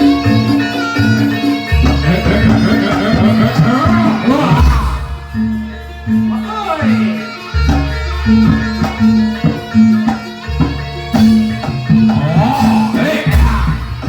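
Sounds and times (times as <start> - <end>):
traditional drum ensemble music: 0.0 - 14.0.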